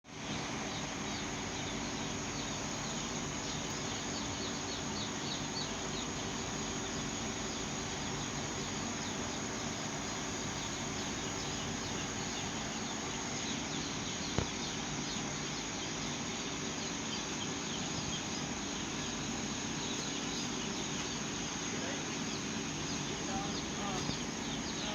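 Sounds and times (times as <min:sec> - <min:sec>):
chickens cheeping: 0:00.1 - 0:24.9
low steady hum: 0:00.1 - 0:24.9.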